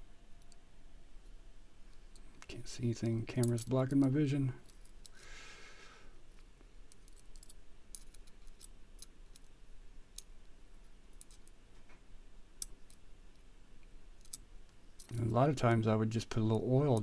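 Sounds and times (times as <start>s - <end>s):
small metal parts clicking: 1.9s - 5.3s, 6.3s - 11.6s, 12.6s - 15.4s.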